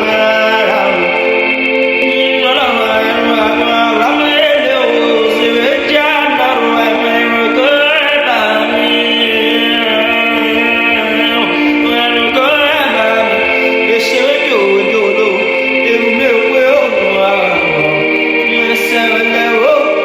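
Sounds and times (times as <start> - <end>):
sustained chords: 0.0 - 20.0
voices singing long notes: 0.0 - 20.0.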